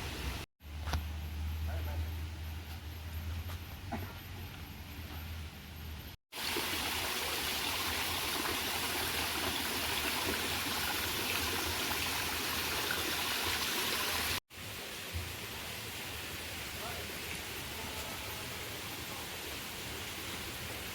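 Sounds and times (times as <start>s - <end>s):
flowing water rushing: 6.3s - 20.9s.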